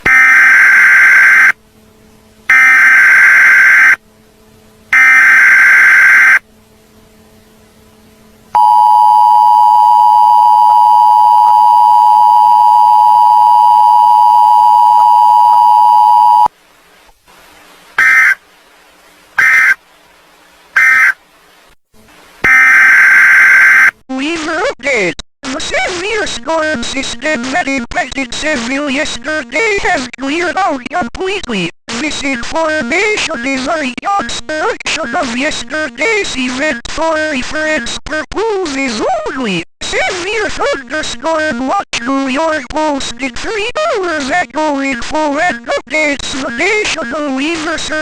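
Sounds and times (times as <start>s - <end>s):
buzzing digital bursts: 0.0s - 1.6s, 2.5s - 4.0s, 5.0s - 6.4s, 18.0s - 18.4s, 19.4s - 19.8s, 20.8s - 21.2s, 22.4s - 23.9s
two-tone attention signal: 0.1s - 1.6s, 2.5s - 4.0s, 5.0s - 6.4s, 8.6s - 16.5s, 22.4s - 23.9s.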